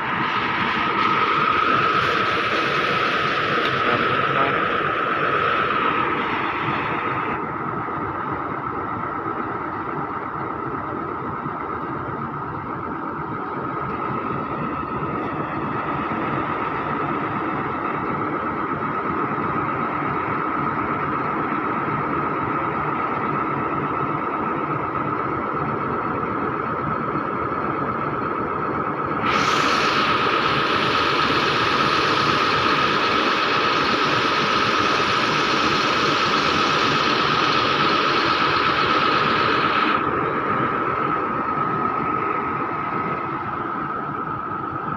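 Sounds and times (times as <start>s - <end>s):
loud hiss: 0.0s - 7.4s, 29.2s - 44.9s
constant whine: 0.0s - 44.9s
truck engine idling: 0.0s - 44.9s.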